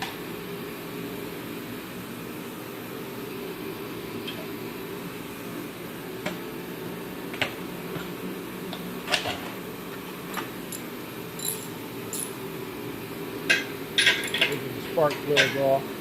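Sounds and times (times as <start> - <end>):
steady low hum: 9.6 - 16.0
metal parts clicking and tapping: 10.3 - 12.4, 14.0 - 14.6.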